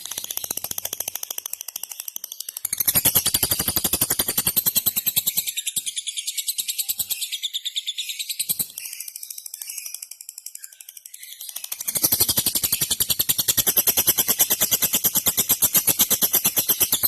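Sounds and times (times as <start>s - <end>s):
soft bird chirping: 0.0s - 13.4s.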